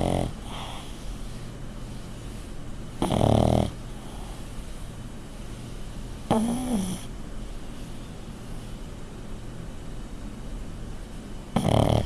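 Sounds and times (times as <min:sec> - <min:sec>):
dog snoring: 0:00.0 - 0:01.0, 0:03.0 - 0:04.4, 0:06.3 - 0:07.1, 0:11.5 - 0:12.0.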